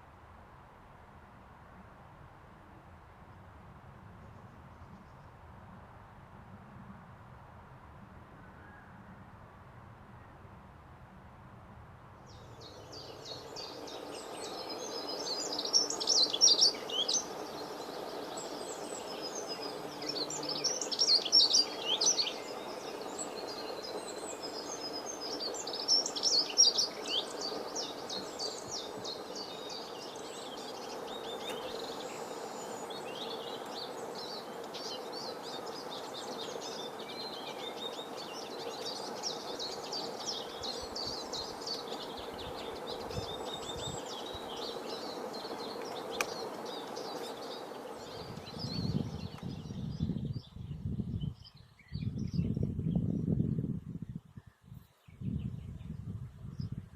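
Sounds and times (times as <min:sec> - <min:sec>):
steady background noise: 0:09.2 - 0:49.4
songbirds chirping and trilling: 0:12.3 - 0:56.9.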